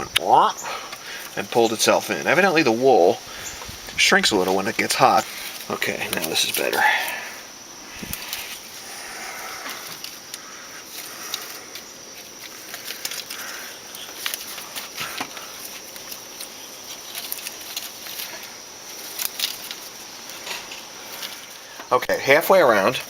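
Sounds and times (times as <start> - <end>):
gasket rustling: 0.0 - 21.9
small irregular clicks and ticks: 9.6 - 22.0.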